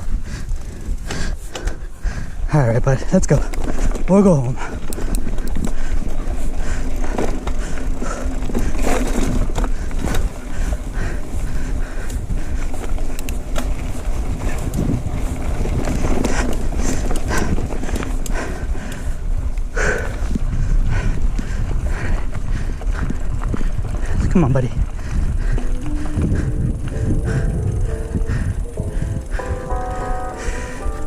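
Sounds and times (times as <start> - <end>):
bike clicks and rattles: 0.0 - 31.0
bike tyres rumbling on dirt: 0.0 - 31.0.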